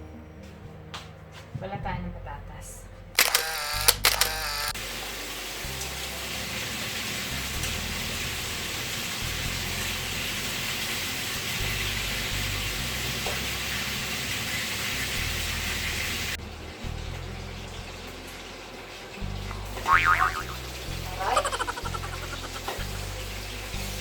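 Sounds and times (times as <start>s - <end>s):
food sizzling in a pan: 4.8s - 11.1s.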